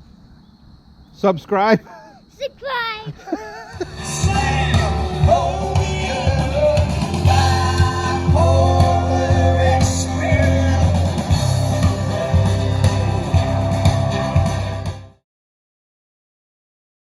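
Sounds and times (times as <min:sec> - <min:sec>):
drums: 0:03.7 - 0:15.2
person singing: 0:03.8 - 0:14.5
bass guitar: 0:03.8 - 0:15.2
electric guitar: 0:03.8 - 0:15.2.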